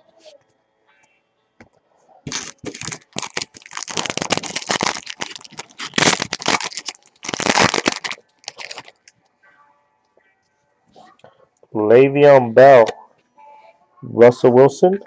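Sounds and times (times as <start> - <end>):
wrapper crinkling and tearing: 2.3 - 9.1.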